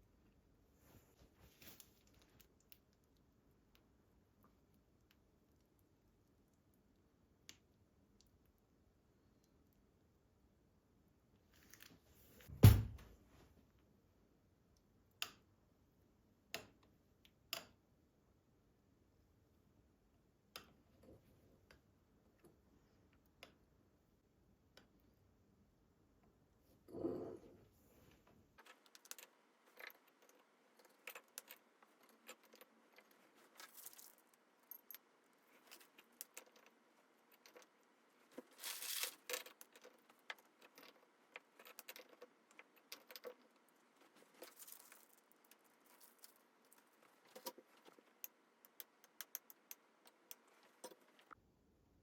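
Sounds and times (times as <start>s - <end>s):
rustling: 27.8s - 51.4s
small hard objects clinking: 28.6s - 51.4s.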